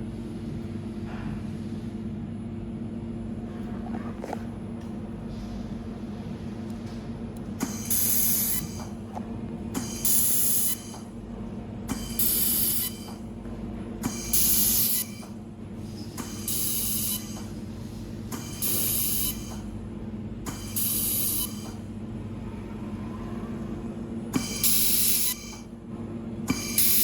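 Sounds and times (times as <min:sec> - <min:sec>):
machine hum: 0:02.9 - 0:27.0
welding hiss bursts: 0:07.6 - 0:08.9, 0:09.8 - 0:11.0, 0:11.9 - 0:13.2, 0:14.1 - 0:15.2, 0:16.2 - 0:17.5, 0:18.3 - 0:19.6, 0:20.5 - 0:21.8, 0:24.4 - 0:25.6, 0:26.6 - 0:27.0.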